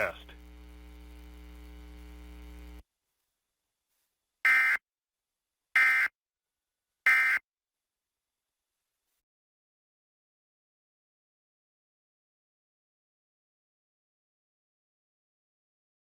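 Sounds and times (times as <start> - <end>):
buzzy digital data bursts: 0.0 - 2.8
low hum: 0.0 - 2.8.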